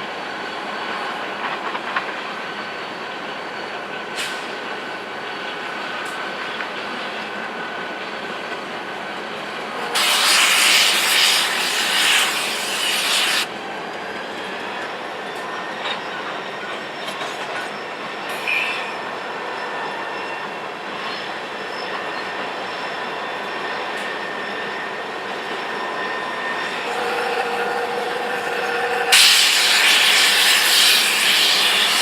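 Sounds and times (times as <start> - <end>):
loud hiss: 9.8 - 13.5, 26.9 - 32.0.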